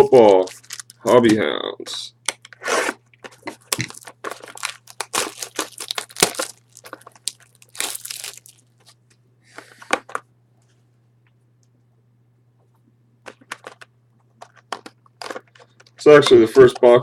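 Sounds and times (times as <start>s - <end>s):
plastic wrapping crinkling: 0.0s - 1.4s, 3.1s - 9.2s, 13.2s - 16.2s.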